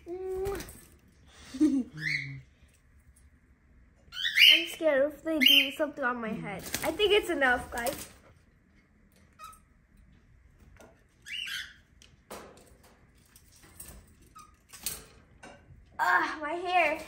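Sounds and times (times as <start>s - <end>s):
parrot chirping: 1.9s - 2.5s, 4.0s - 5.8s, 11.1s - 12.0s.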